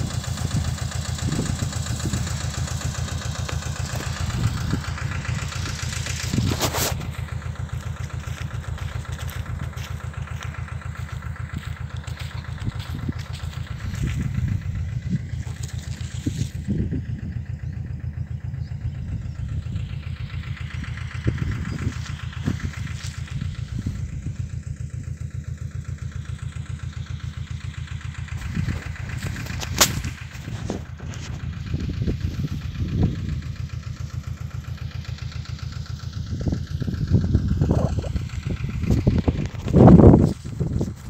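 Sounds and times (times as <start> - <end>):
tractor diesel engine running: 0.0 - 41.0.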